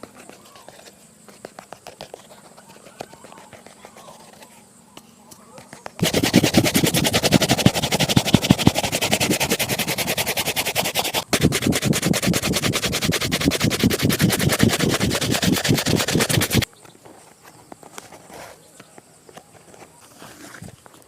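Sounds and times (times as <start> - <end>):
shoe brush strokes on shoe: 6.0 - 16.7.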